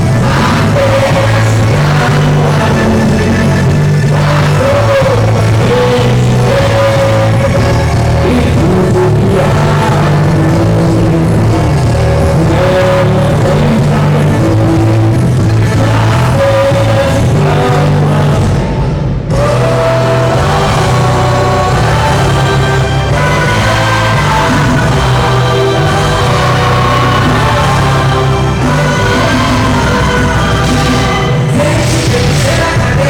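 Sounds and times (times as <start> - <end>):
heavy bass line: 0.0 - 33.0
person singing long notes: 19.3 - 33.0.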